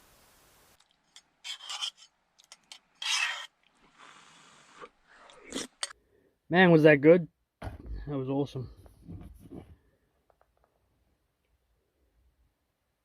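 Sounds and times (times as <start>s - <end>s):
rasping eating noises: 2.4s - 6.0s.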